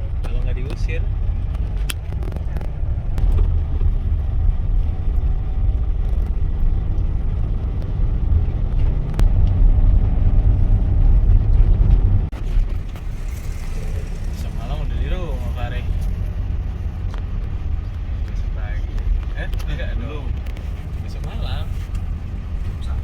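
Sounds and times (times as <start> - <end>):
faint engine hum: 0.0 - 23.0
moving vehicle rumble: 0.0 - 23.0.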